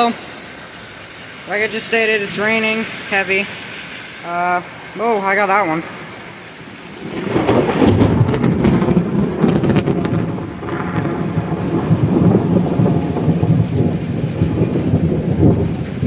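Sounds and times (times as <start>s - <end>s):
heavy rain: 0.0s - 16.0s
thunder crackling and rumbling: 4.3s - 16.0s.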